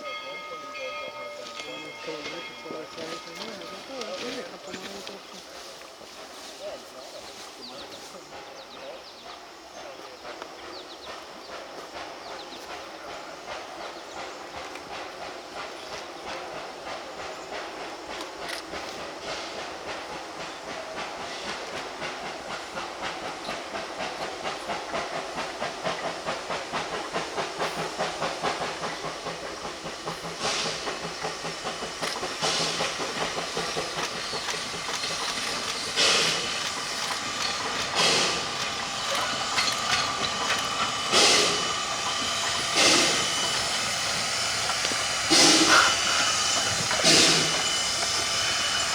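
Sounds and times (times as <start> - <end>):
steam hissing: 0.0 - 48.9
steam locomotive exhaust beats: 0.0 - 48.9
steam blasts: 9.8 - 48.9.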